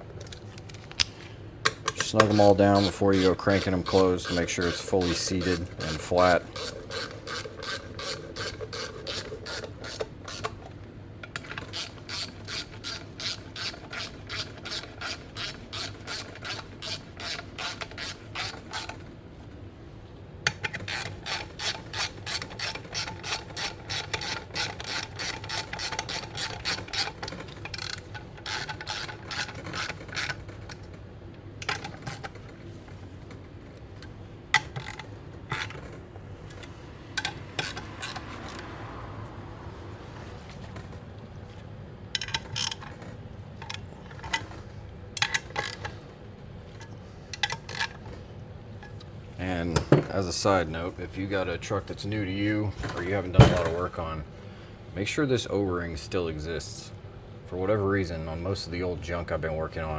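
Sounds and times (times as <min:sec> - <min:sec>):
socket ratchet clicking: 0:00.7 - 0:10.6, 0:11.3 - 0:19.0, 0:20.5 - 0:30.8, 0:34.6 - 0:35.9, 0:36.5 - 0:38.7, 0:45.2 - 0:46.0.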